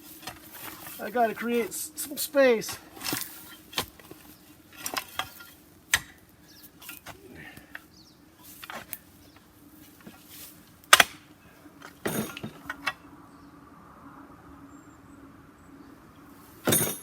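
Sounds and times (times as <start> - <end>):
faint steady hum: 0.0 - 17.0
metal knocks and clanks: 16.6 - 17.0.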